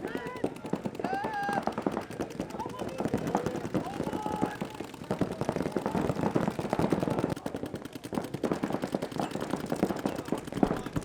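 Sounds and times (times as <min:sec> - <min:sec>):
paintball markers firing: 0:00.0 - 0:11.0.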